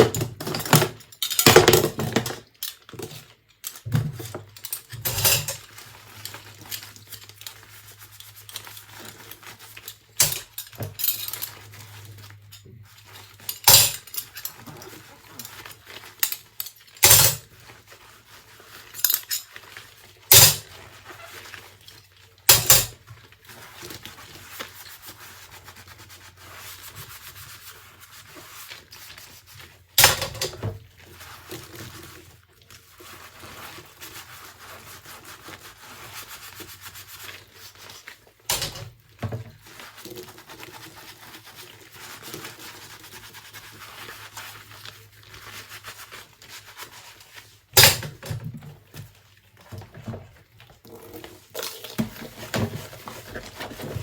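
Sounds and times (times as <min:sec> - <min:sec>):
dishes clinking and clattering: 0:00.0 - 0:03.2, 0:03.9 - 0:05.7, 0:10.2 - 0:11.6, 0:13.5 - 0:15.6, 0:38.5 - 0:39.0
sponge scrubbing dishes: 0:01.8 - 0:54.0.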